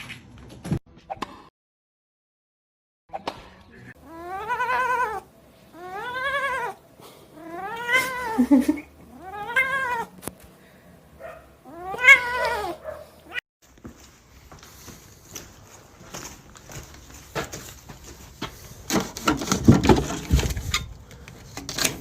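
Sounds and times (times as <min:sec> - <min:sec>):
cat meowing: 0:04.0 - 0:06.8, 0:07.4 - 0:08.5, 0:09.1 - 0:10.2, 0:11.6 - 0:13.4.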